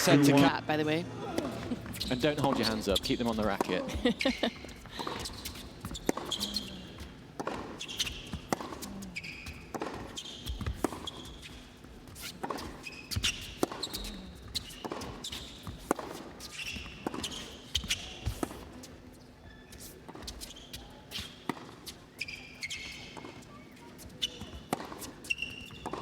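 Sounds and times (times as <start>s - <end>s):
tennis ball bouncing on court: 1.3s - 18.8s, 24.0s - 26.0s
shoes squeaking on court: 1.3s - 26.0s
tennis ball struck by racket: 7.4s - 9.0s.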